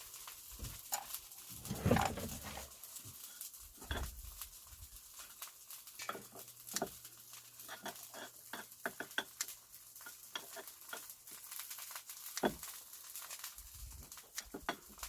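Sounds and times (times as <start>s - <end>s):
oil sizzling in a frying pan: 0.0s - 1.7s, 2.6s - 15.0s.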